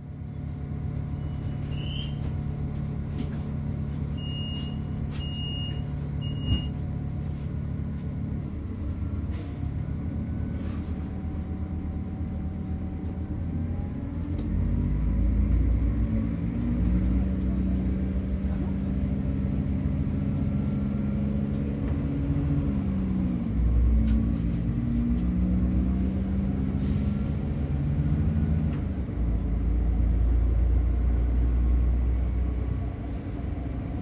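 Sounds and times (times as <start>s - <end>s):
train rumble and hum: 0.0s - 34.0s
short high beeps: 1.1s - 2.3s, 4.2s - 6.8s.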